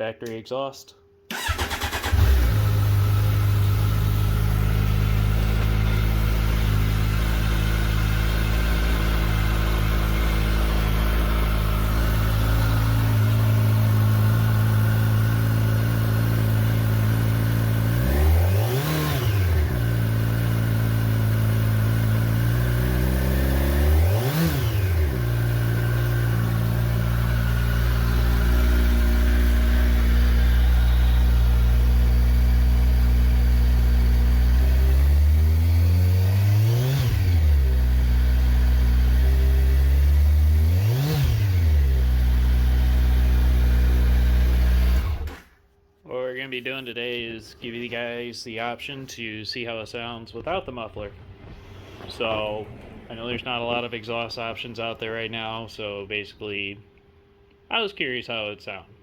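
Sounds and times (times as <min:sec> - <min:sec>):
motorcycle throttle blips: 0:01.3 - 0:18.0, 0:25.0 - 0:34.4
motorcycle engine starting and idling: 0:01.3 - 0:45.8.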